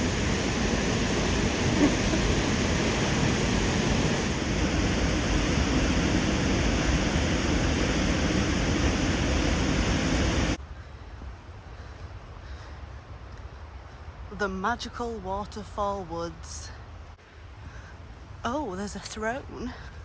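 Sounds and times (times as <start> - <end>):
waterfall rushing: 0.0 - 10.6.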